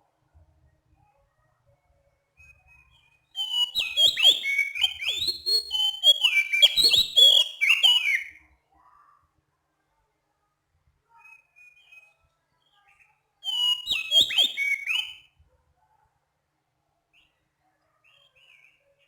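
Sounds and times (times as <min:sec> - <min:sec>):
bird singing whistled phrases: 0:03.4 - 0:08.4, 0:13.4 - 0:15.3.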